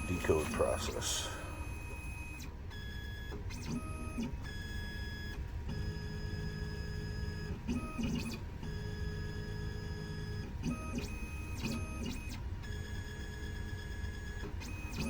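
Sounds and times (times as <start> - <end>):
steady low hum: 0.0 - 2.4.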